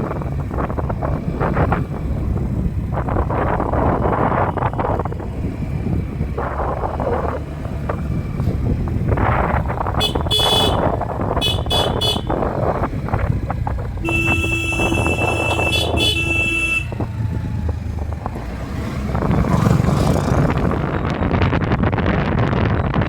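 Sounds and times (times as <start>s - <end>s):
motorcycle engine running: 0.0s - 23.0s
wind noise on microphone: 0.0s - 23.0s
vehicle horn beeping: 10.0s - 12.5s, 14.0s - 17.1s.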